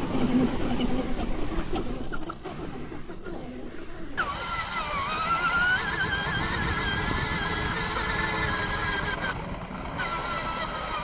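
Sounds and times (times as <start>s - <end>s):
buggy driving over rough ground: 4.2s - 11.0s
electric motor whine: 4.2s - 11.0s.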